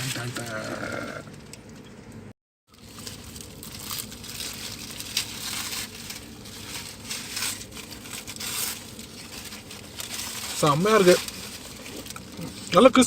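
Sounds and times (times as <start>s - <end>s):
paper wrapper crinkling: 2.7s - 13.0s.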